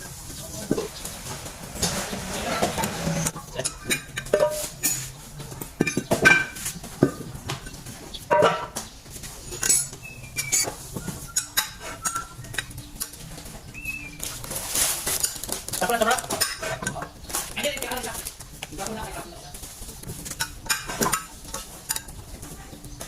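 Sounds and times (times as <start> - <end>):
metal tools clinking and clanking: 1.8 - 8.8, 9.5 - 10.7, 15.0 - 17.5, 20.2 - 22.2.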